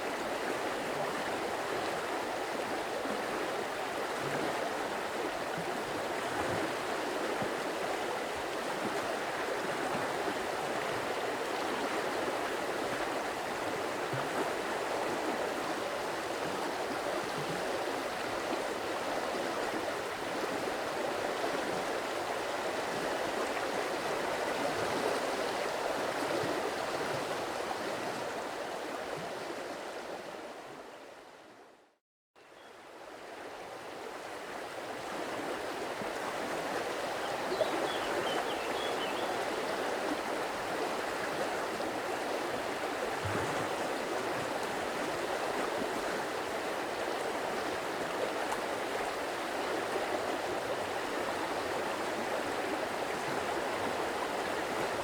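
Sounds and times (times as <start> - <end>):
stream flowing over rocks: 33.2 - 55.0.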